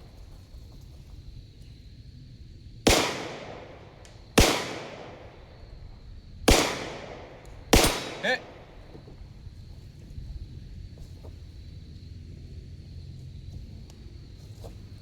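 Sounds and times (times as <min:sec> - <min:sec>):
pistol shots with echo: 0:02.9 - 0:05.6, 0:06.5 - 0:08.9.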